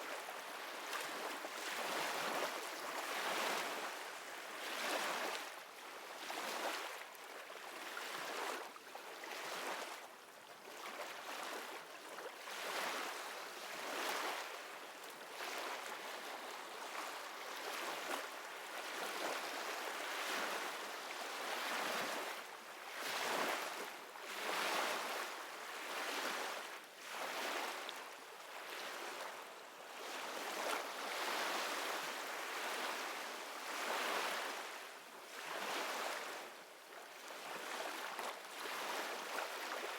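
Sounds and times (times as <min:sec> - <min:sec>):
ocean waves on shore: 0:15.4 - 0:27.9, 0:28.5 - 0:36.4, 0:37.2 - 0:39.9.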